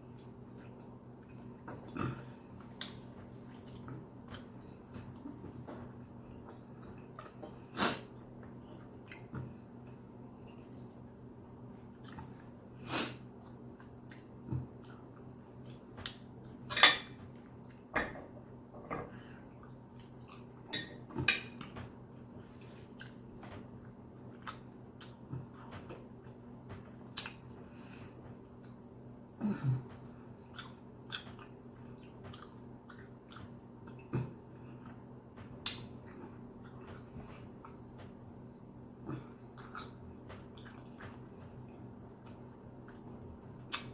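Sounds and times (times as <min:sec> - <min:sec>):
faint low hum: 0:00.0 - 0:43.9
person chewing steak: 0:11.9 - 0:12.4, 0:13.3 - 0:16.6, 0:19.5 - 0:21.8, 0:24.2 - 0:26.4, 0:30.4 - 0:43.9.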